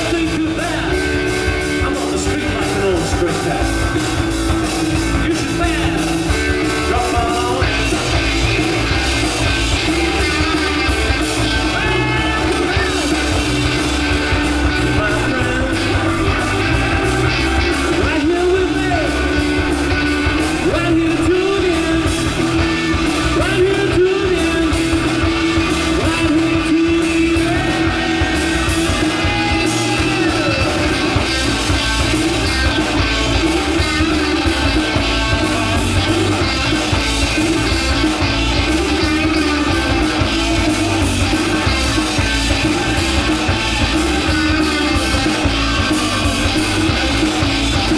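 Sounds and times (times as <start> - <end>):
person singing: 0.0 - 4.0, 4.9 - 47.9
guitar: 0.0 - 47.9
steady drum beat: 0.0 - 47.9.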